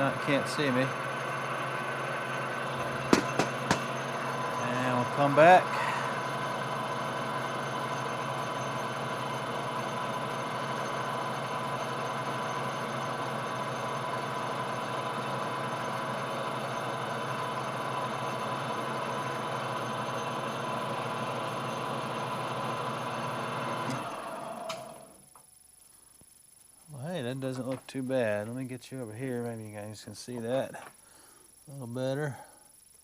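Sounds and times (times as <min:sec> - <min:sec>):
metal lathe running: 0:00.0 - 0:25.2.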